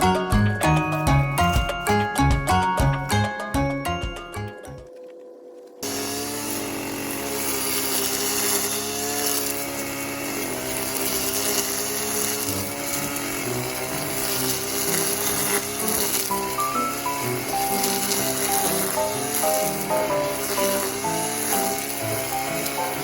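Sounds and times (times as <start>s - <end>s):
brush cutter running: 5.8s - 23.0s.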